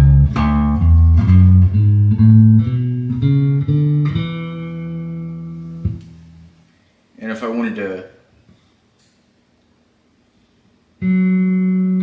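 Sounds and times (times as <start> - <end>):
electric bass guitar scale: 0.0 - 6.6, 11.0 - 12.0.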